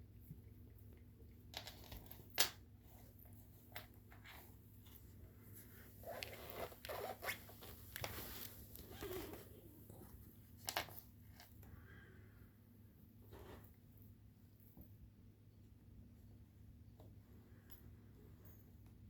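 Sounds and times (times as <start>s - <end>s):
cat scratching and rustling: 1.6s - 11.6s.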